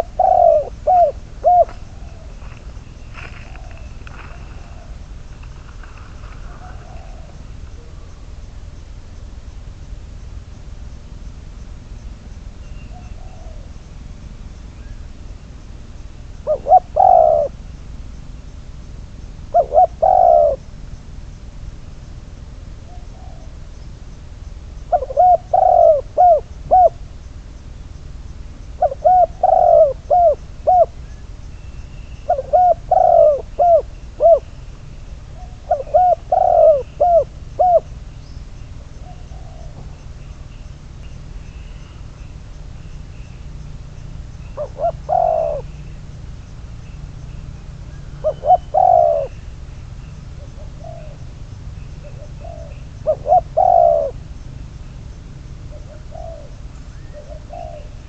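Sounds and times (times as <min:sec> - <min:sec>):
dove cooing: 0:00.0 - 0:08.4, 0:12.7 - 0:13.8, 0:16.4 - 0:17.7, 0:19.5 - 0:20.8, 0:24.9 - 0:27.2, 0:28.7 - 0:42.3, 0:44.4 - 0:58.0.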